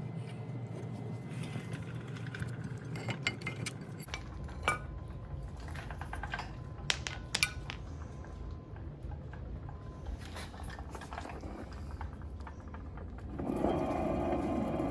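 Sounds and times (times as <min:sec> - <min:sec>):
metal parts clinking: 0:06.9 - 0:07.8.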